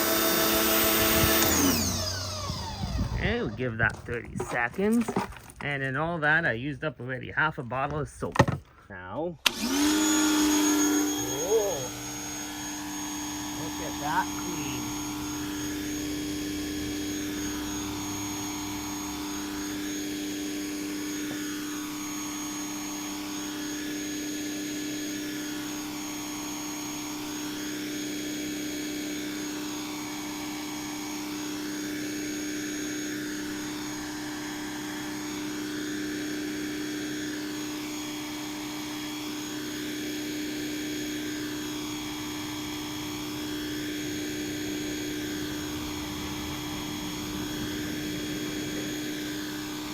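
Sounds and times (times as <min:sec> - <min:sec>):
pressure washer motor hum: 0:00.0 - 0:04.0, 0:09.4 - 0:49.9.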